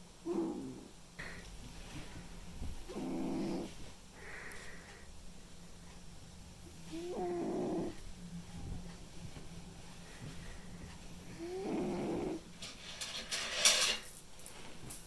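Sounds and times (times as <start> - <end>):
cat snoring: 0.2 - 1.4, 2.8 - 3.8, 6.9 - 8.0, 11.3 - 12.5
soft hissing breath: 0.3 - 6.0, 6.6 - 13.0.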